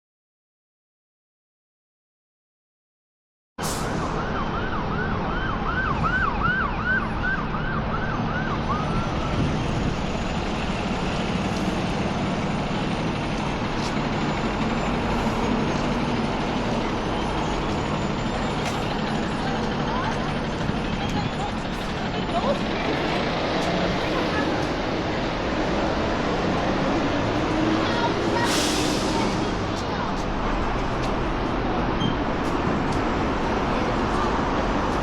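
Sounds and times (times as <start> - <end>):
city street traffic: 3.6 - 35.0
siren yelping: 4.0 - 9.5.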